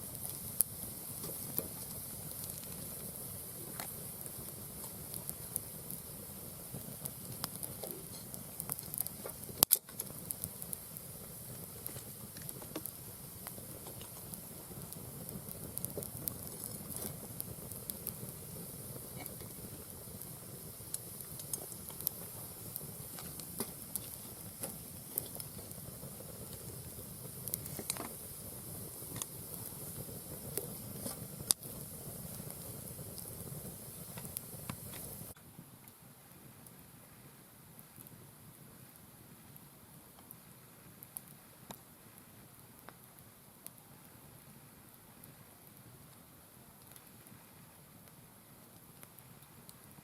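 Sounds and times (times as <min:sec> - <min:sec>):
firewood crackling and popping: 0:00.0 - 0:35.4, 0:39.5 - 0:50.0
loud sharp crack of fire: 0:00.0 - 0:35.4.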